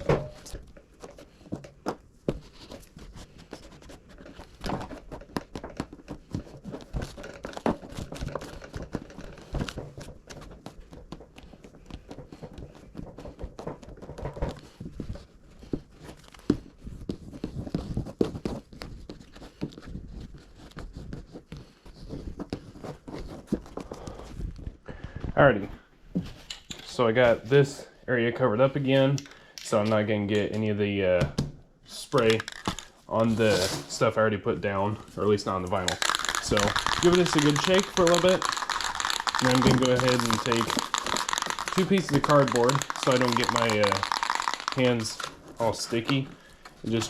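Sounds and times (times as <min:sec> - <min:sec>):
plastic sheeting crinkling: 0:35.0 - 0:47.0.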